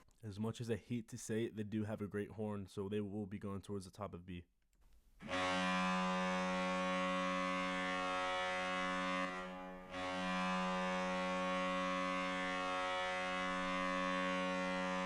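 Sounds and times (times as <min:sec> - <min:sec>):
goal horn blast: 0:05.2 - 0:15.0.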